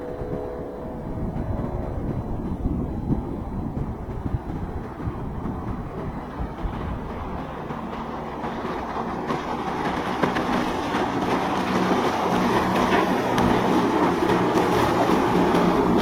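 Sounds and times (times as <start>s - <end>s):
boat engines running: 0.0s - 16.0s
water rushing: 0.0s - 16.0s.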